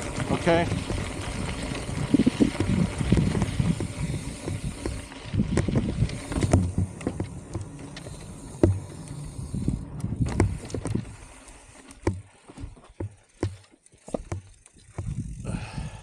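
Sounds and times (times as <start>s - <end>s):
wind noise: 0.0s - 11.4s
bike rattling over bumps: 0.0s - 16.0s.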